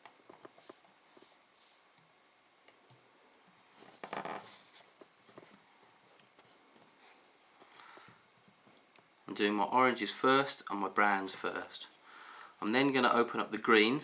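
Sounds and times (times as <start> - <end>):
scratchy rustling: 3.6 - 7.7.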